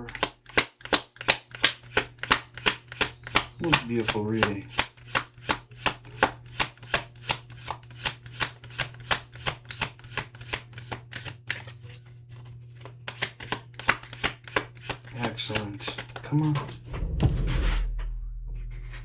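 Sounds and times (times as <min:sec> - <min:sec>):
cards being shuffled: 0:00.0 - 0:16.9
low hum: 0:16.7 - 0:19.0.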